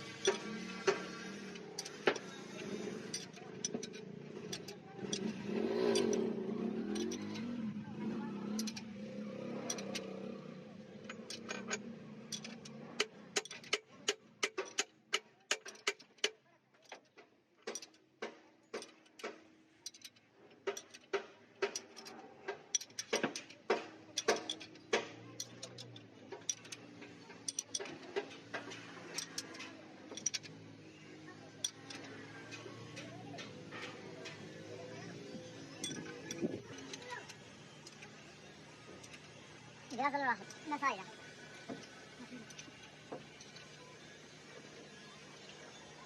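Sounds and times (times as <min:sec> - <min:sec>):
mechanical hum: 0:00.0 - 0:13.4.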